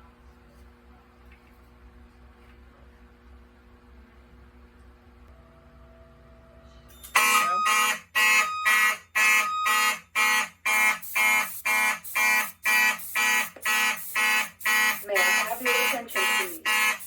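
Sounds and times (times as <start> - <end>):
faint room hum: 0.0 - 7.7
fire alarm horns pulsing: 7.1 - 17.0.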